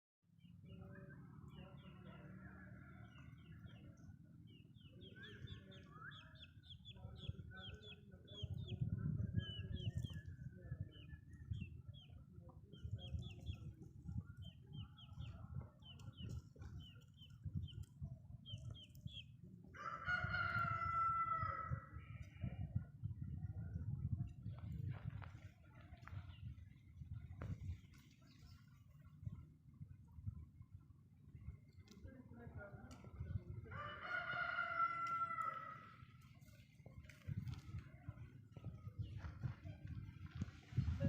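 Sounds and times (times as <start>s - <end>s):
chickens clucking and chirping: 3.0s - 25.0s
rooster crowing: 19.8s - 21.7s, 33.8s - 35.8s.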